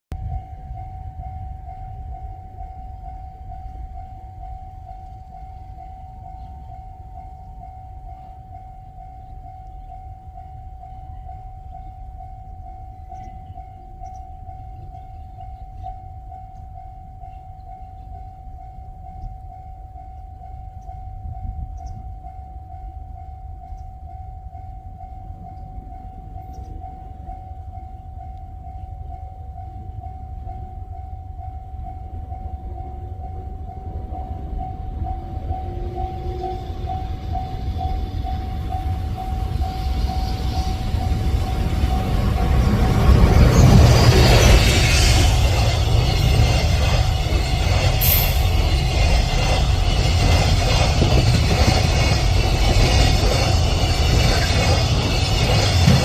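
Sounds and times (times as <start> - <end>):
level-crossing bell ringing: 0.2 - 56.0
low rumble: 31.7 - 56.0.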